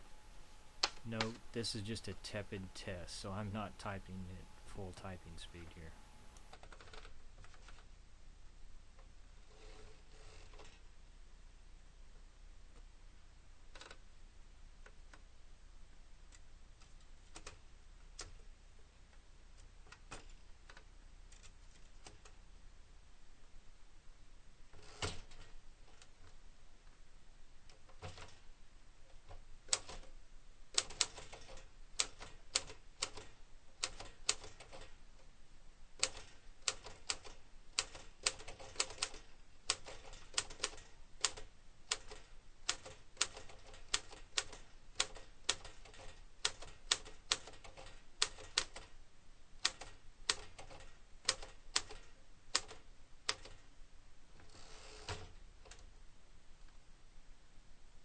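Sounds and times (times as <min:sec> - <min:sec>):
manual typewriter keystrokes: 0:29.7 - 0:30.1, 0:30.8 - 0:35.0, 0:36.0 - 0:48.9, 0:49.6 - 0:53.6.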